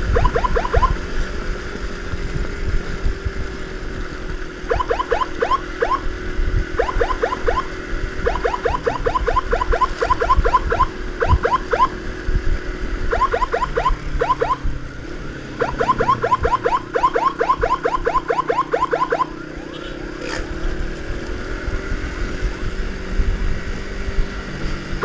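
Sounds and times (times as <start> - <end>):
electronic siren yelping: 0.0 - 1.2, 4.6 - 12.3, 13.0 - 14.9, 15.5 - 20.4
motorcycle engine: 0.0 - 25.0
road noise: 0.0 - 25.0.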